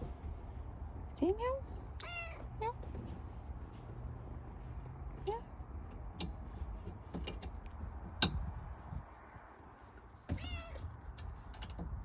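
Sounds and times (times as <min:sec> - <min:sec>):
kitten meowing: 0:02.0 - 0:02.5.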